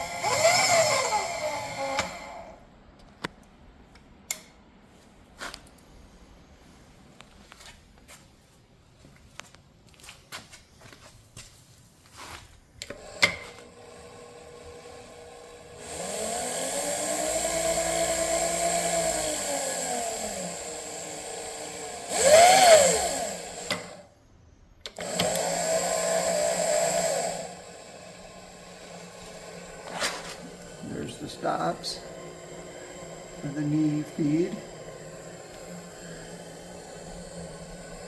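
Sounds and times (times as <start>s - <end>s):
milling machine motor whine: 0.0s - 2.6s, 12.9s - 24.1s, 24.8s - 38.0s.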